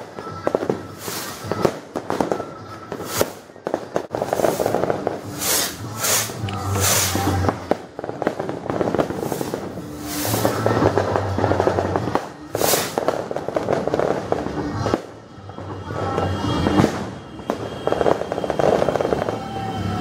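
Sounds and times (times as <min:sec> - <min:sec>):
background music: 0:00.0 - 0:20.0
fireworks crackling: 0:00.0 - 0:20.0
hissing bursts: 0:04.2 - 0:07.4, 0:09.1 - 0:10.7, 0:12.5 - 0:13.0.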